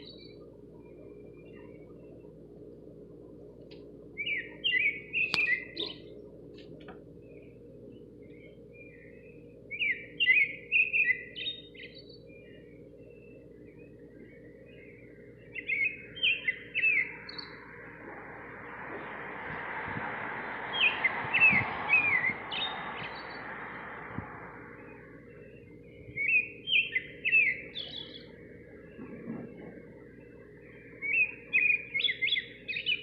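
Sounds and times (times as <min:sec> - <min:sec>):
nightingale singing: 0:04.1 - 0:06.2, 0:07.2 - 0:33.0
broad rushing noise: 0:16.8 - 0:25.7.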